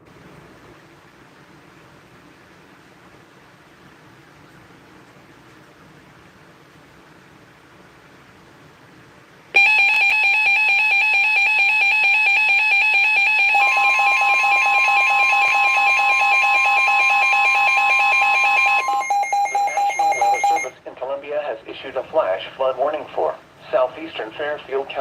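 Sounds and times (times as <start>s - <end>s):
rapidly pulsing electronic alarm: 9.6s - 20.8s
steady warning tone: 9.6s - 20.8s.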